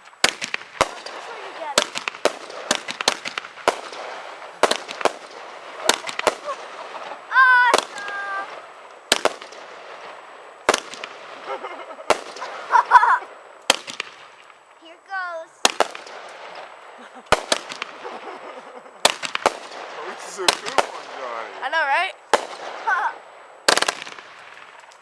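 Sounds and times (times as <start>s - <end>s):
fireworks bangs and cracks: 0.0s - 25.0s
steady hiss: 0.0s - 25.0s
person calling out: 7.3s - 8.5s.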